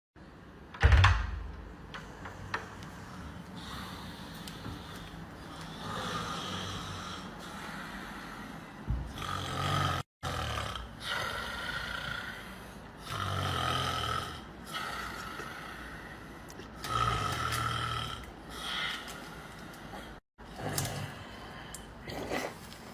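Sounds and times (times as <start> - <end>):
person snoring: 5.4 - 19.3.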